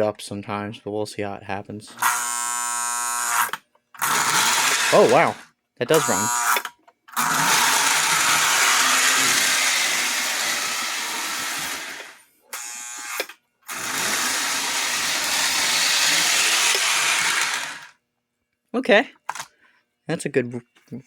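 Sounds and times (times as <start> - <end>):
toy train motor whirring: 2.0 - 18.0.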